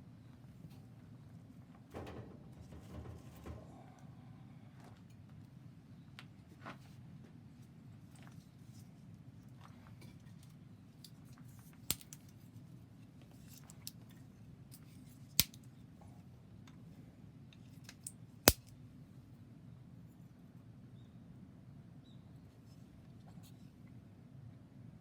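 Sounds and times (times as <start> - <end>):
wood crackling in a stove: 11.0 - 12.4, 14.7 - 15.7, 17.8 - 18.7
sharp pops of burning wood: 11.9 - 12.2, 18.0 - 18.7.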